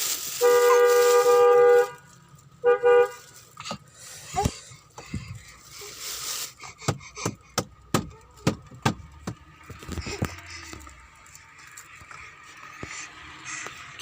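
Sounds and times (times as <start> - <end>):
sharp knocks with dull thuds: 6.8 - 9.5.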